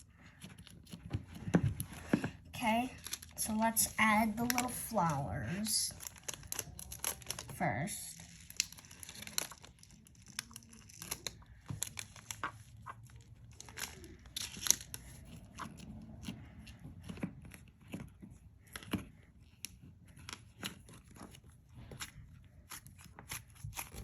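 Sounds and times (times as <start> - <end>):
slime crackling and popping: 2.6 - 16.3.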